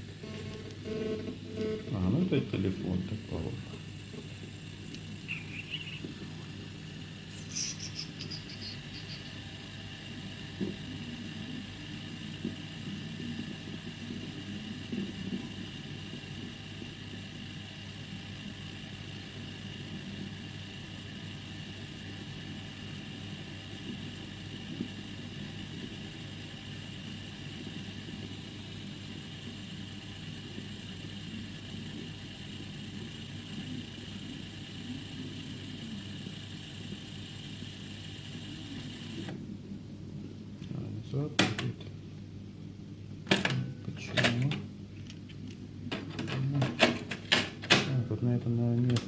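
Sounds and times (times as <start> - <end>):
cassette motor hum: 0.0 - 49.0.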